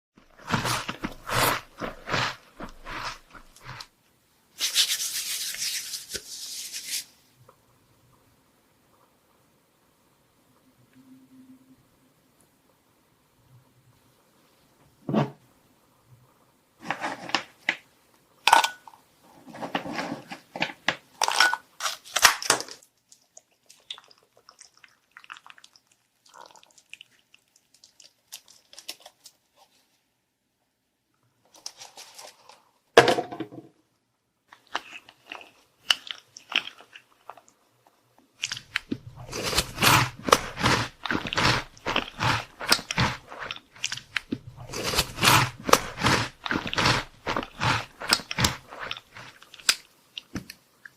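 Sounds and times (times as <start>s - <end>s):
crunchy chewing of chocolate treats: 0.2s - 3.9s, 23.0s - 29.4s, 34.5s - 50.9s.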